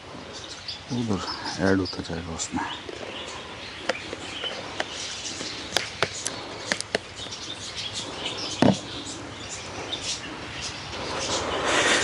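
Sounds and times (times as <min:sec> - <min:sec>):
birds chirping faintly: 0:00.0 - 0:12.0
sharp clicks and taps: 0:05.7 - 0:07.0.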